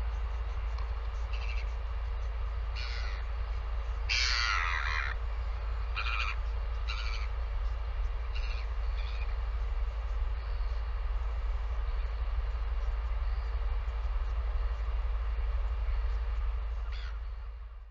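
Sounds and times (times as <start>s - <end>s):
harsh bird calls: 0.0s - 10.9s, 16.7s - 17.5s
steady low rumble: 0.0s - 17.9s.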